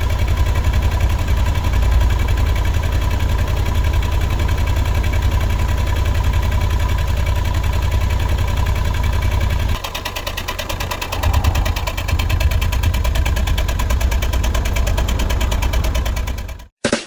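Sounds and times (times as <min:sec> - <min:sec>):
car engine running: 0:00.0 - 0:16.7.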